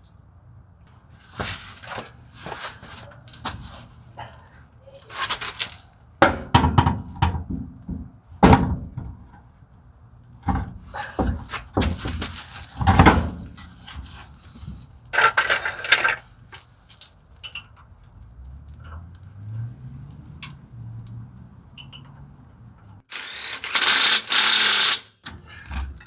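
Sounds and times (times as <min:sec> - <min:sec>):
metal knocks and clicks: 0:10.4 - 0:16.6
short rasping bursts: 0:23.1 - 0:25.1.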